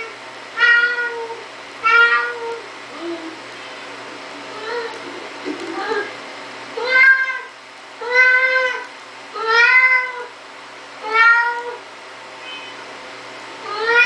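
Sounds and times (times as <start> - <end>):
cat meowing: 0.0 - 2.6, 6.8 - 8.8, 9.4 - 10.3, 11.0 - 11.8, 12.4 - 12.8, 13.7 - 14.0.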